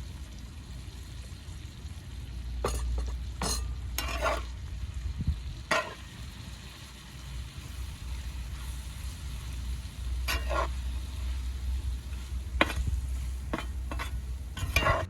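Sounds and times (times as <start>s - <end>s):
food sizzling in a frying pan: 0.0s - 15.0s
utensil scraping a pan: 2.6s - 4.7s, 5.7s - 6.2s, 8.3s - 15.0s.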